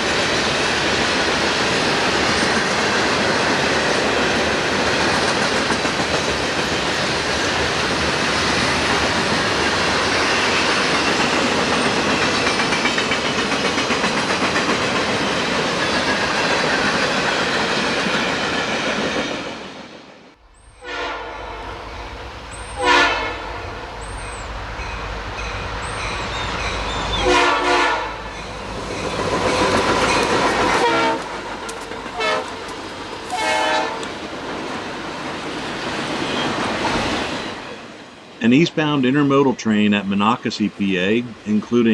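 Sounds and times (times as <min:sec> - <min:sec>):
distant locomotive rumbling: 0:00.0 - 0:38.1
freight cars rolling on rails: 0:00.0 - 0:38.4
train air horn blasts: 0:20.7 - 0:28.6, 0:30.1 - 0:32.7, 0:33.3 - 0:34.2.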